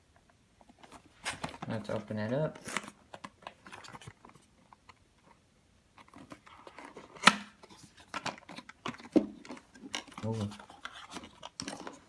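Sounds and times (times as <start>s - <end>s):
packaging clicks and rustles: 0.6s - 5.4s, 6.0s - 12.0s.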